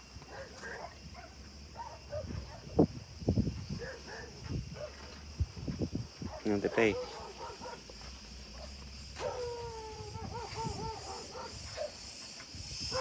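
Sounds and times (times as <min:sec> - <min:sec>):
insects chirring: 0:00.0 - 0:13.0.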